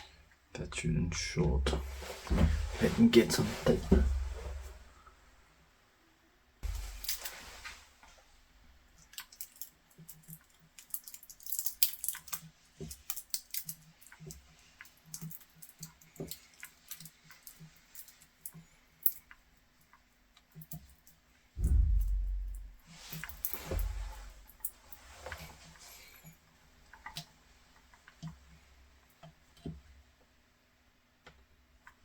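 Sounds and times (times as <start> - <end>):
dull knock: 21.6 - 22.6.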